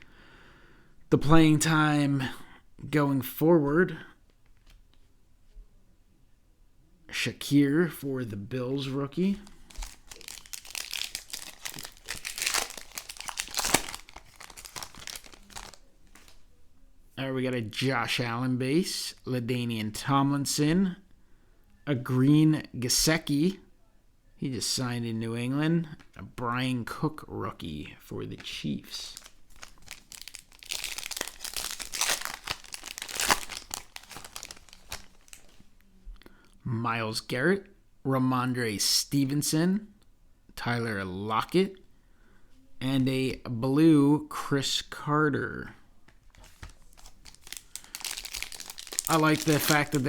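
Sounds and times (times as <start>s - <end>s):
foil wrapper crinkling and tearing: 9.4s - 16.4s, 29.0s - 35.6s, 46.3s - 50.0s
cards clicking and rustling: 9.7s - 16.4s, 29.2s - 35.6s, 46.3s - 50.0s.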